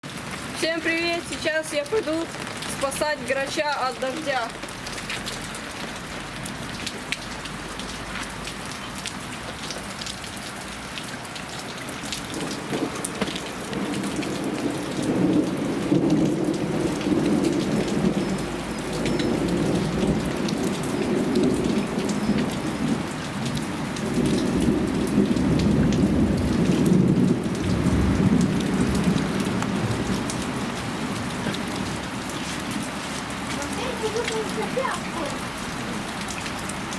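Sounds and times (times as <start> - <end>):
heavy rain pouring: 0.0 - 36.9
rumble of thunder: 12.2 - 32.3.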